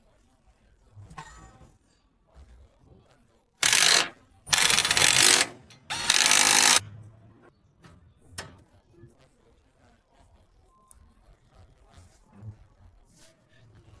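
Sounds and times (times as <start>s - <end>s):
rickshaw mechanical rattling grind: 3.6s - 6.8s.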